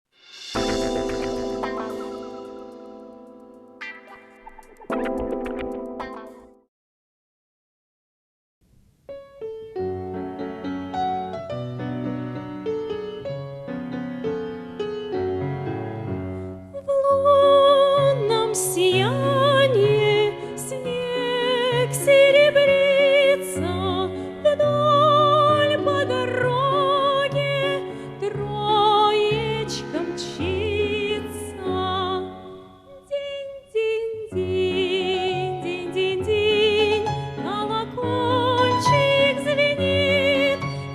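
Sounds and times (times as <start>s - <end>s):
instrumental accompaniment: 0.2s - 6.7s.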